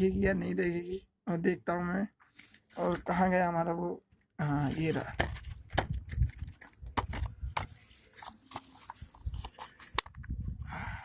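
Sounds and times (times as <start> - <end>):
packaging rustling: 4.6 - 10.2.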